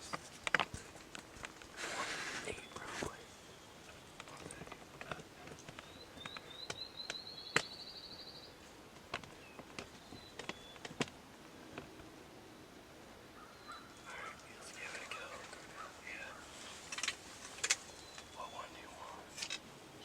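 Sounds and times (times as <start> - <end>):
songbird trilling: 13.4 - 16.8, 17.8 - 19.4.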